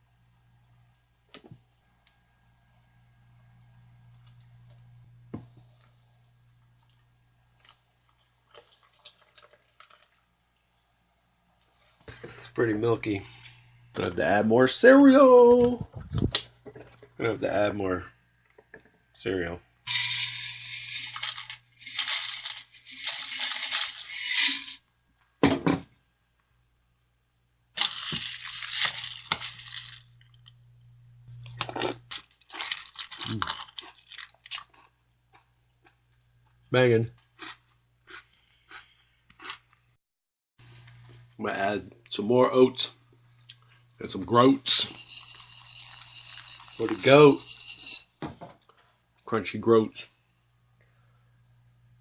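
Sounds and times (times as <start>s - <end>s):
cereal poured into a bowl: 19.9s - 24.8s, 27.8s - 30.1s, 44.7s - 48.0s
crunchy cereal clicks: 27.8s - 30.5s, 31.4s - 36.0s.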